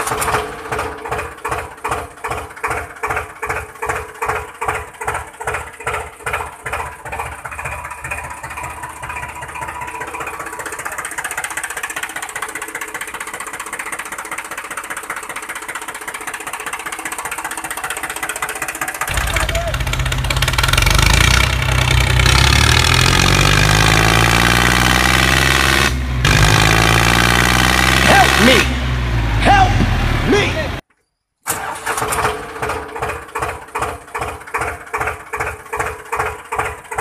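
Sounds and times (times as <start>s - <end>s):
model tractor motor running: 0.0s - 25.0s, 31.6s - 37.0s.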